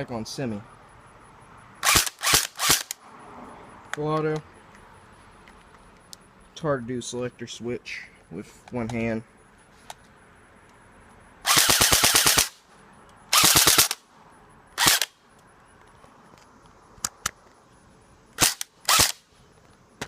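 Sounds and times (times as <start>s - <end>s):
airsoft rifle firing bursts: 1.8s - 2.9s, 11.5s - 12.6s, 13.3s - 14.0s, 14.8s - 15.1s, 18.4s - 19.2s
sharp clicks: 1.8s - 3.0s, 11.5s - 14.0s, 14.8s - 17.6s, 18.4s - 19.8s.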